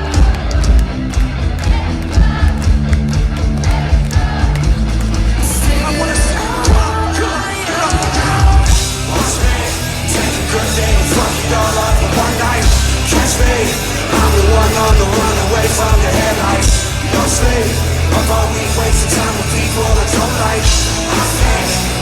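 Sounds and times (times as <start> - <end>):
distorted guitars: 0.0 - 22.0
live pop-punk band: 0.0 - 22.0
steady drum beat: 0.0 - 22.0.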